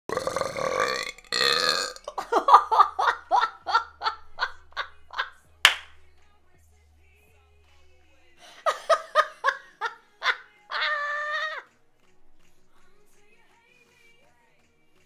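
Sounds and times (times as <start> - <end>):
woman burping: 0.1 - 2.3.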